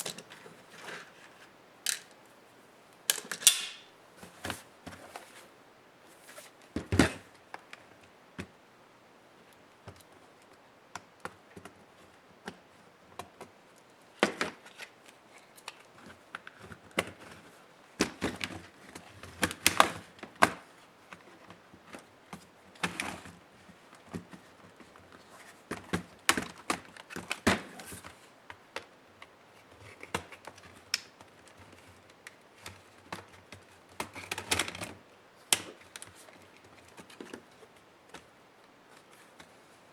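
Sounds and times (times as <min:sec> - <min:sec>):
tools clicking on plastic case: 0:01.9 - 0:02.2, 0:03.1 - 0:03.9.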